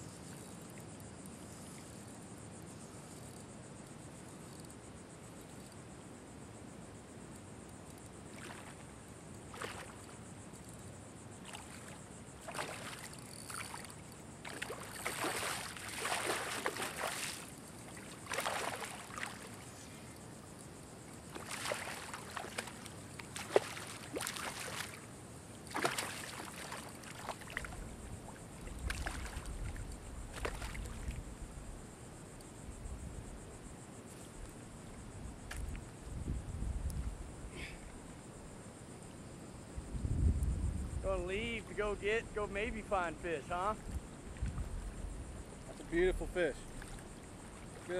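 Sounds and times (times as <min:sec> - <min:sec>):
high insect drone: 0:00.0 - 0:47.9
water splashing and sloshing: 0:08.2 - 0:10.7, 0:11.4 - 0:20.3, 0:21.0 - 0:31.5, 0:43.6 - 0:47.9.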